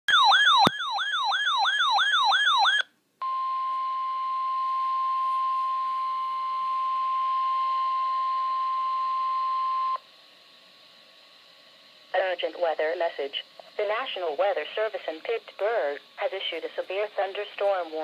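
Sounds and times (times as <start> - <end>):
electronic siren alert yelping: 0.1 - 2.9
steady warning alarm tone: 0.1 - 10.0
radio hiss: 10.8 - 18.0.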